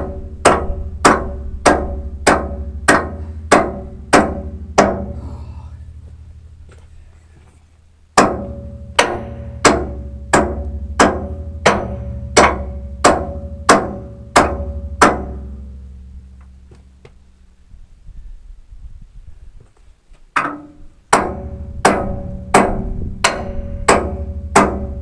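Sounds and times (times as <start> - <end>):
hammer striking steel: 0.0 - 5.2, 8.2 - 15.7, 20.4 - 25.0
steady low hum: 0.0 - 25.0.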